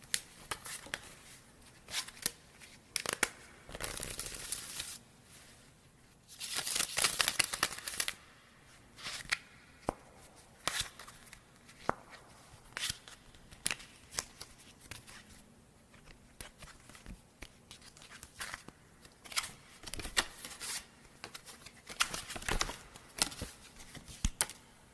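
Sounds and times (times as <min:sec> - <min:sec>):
playing cards rustling: 0:00.1 - 0:05.0, 0:06.3 - 0:08.2, 0:10.5 - 0:24.6
cards snapping and flicking: 0:03.0 - 0:04.9, 0:06.4 - 0:08.2.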